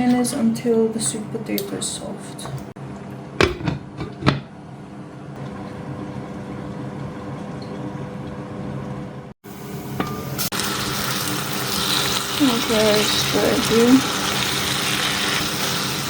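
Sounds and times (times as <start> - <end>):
pot simmering with hiss: 9.4 - 16.0.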